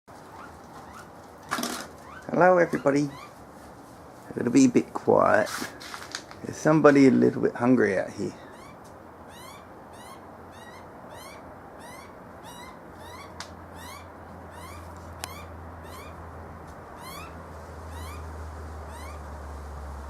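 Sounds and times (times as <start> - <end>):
fledgling bird begging calls: 0.3 - 3.4, 8.3 - 16.2, 16.9 - 19.3.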